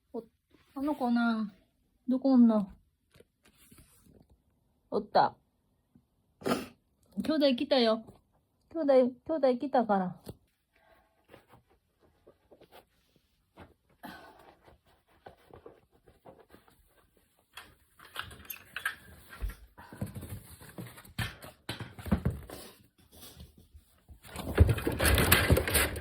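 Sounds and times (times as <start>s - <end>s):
kitten scuffling: 11.2s - 26.0s.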